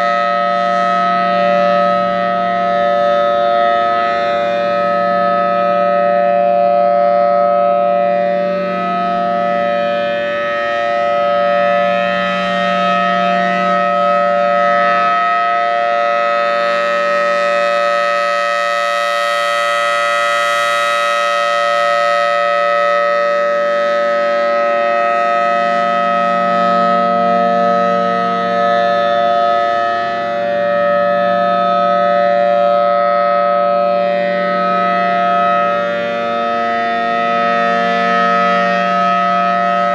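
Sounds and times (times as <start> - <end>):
warning siren steady chord: 0.0 - 39.9.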